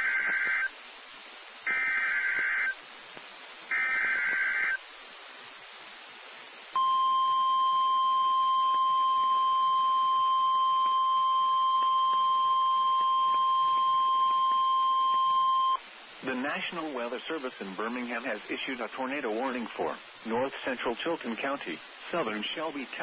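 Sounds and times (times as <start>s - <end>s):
buzzy two-tone data signal: 0.0s - 0.7s, 1.7s - 2.8s, 3.7s - 4.8s
steady warning alarm tone: 0.0s - 0.7s, 1.7s - 2.8s, 3.7s - 4.8s, 6.8s - 15.8s.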